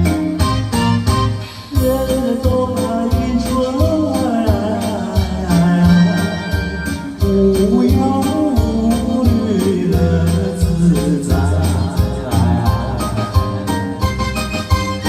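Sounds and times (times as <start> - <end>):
festive song: 0.0 - 15.0
percussion beat: 1.7 - 15.0
wavering melody with vibrato: 10.5 - 15.0.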